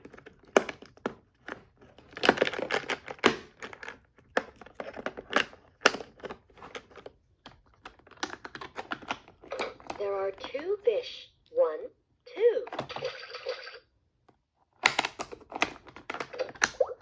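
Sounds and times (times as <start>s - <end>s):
plastic latches clicking: 14.8s - 16.8s.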